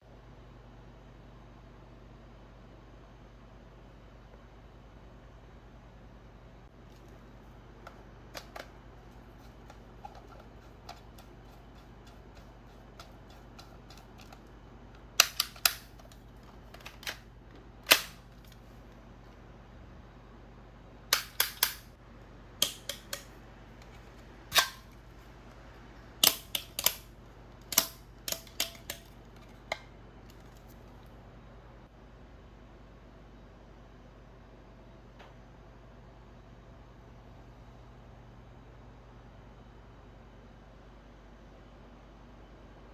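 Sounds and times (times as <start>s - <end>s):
low steady hum: 0.0s - 42.9s
toy blaster snapping shots: 15.2s - 16.0s, 17.9s - 18.2s, 21.2s - 21.9s, 24.5s - 24.9s.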